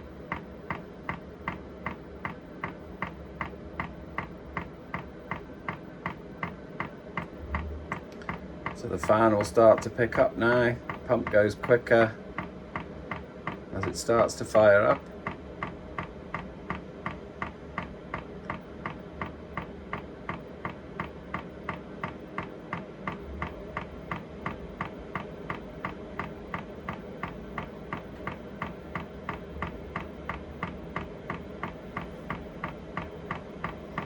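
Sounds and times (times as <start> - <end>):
heater fan hum: 0.0 - 34.0
fuel pump ticking: 0.3 - 34.0.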